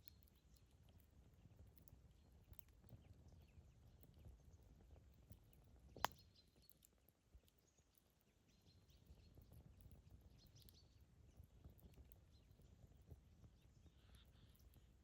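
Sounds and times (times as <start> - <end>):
campfire crackling: 0.0 - 15.0
campfire sharp pop: 6.0 - 6.2.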